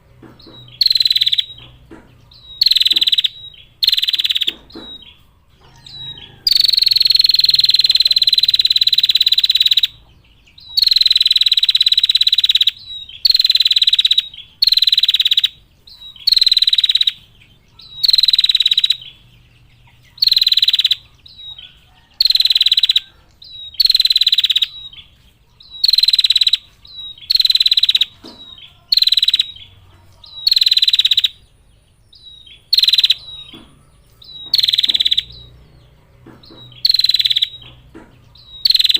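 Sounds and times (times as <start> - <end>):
bird buzzy rattling trills: 0.0 - 38.9
bird high chips: 32.6 - 35.5.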